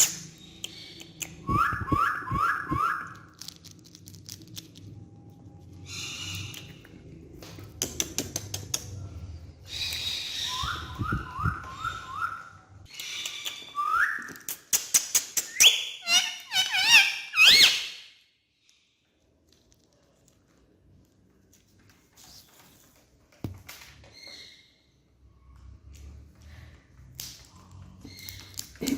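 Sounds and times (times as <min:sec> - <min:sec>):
parrot whistling and chirping: 0:00.0 - 0:03.3, 0:09.7 - 0:14.3, 0:15.4 - 0:18.0.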